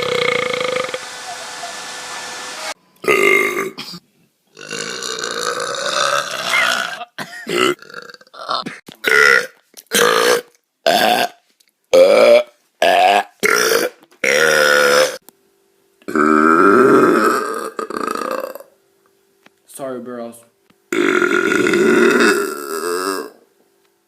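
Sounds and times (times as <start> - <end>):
loud belches: 3.0 - 4.0, 4.6 - 11.4, 12.0 - 15.2, 16.1 - 18.7, 20.9 - 23.4.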